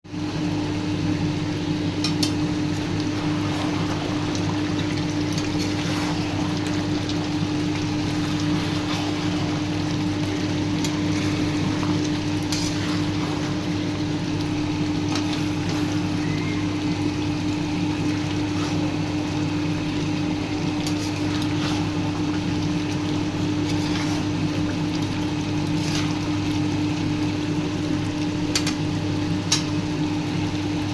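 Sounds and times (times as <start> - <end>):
food bubbling in a pot: 0.1 - 30.9
steady low hum: 0.1 - 30.9.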